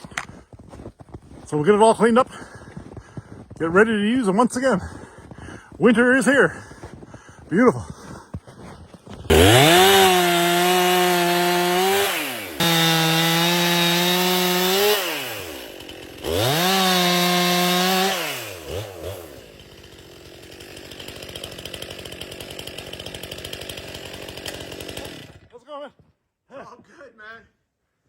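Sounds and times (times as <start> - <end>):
chainsaw revving: 9.3 - 25.5.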